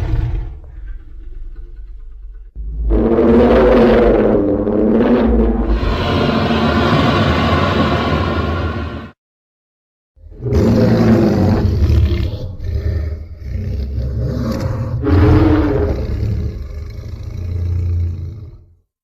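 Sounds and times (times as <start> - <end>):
creature roar: 2.7 - 9.0, 10.3 - 18.6.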